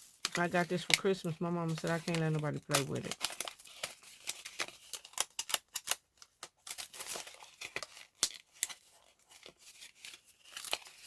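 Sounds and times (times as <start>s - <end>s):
packaging crinkling and tearing: 0.0s - 11.0s.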